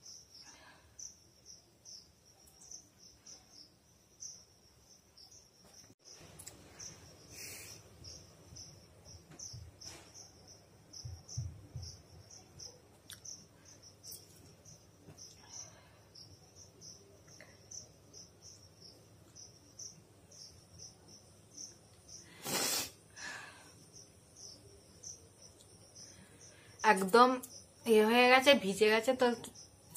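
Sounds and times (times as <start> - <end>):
cricket chirping: 0.0 - 29.9
person blowing nose: 22.4 - 23.0.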